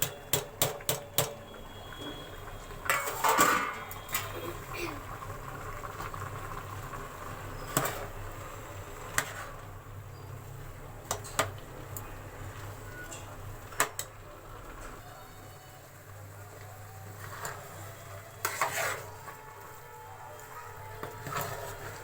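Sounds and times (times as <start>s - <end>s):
metal spoon scraping cooking pot: 18.4s - 19.4s.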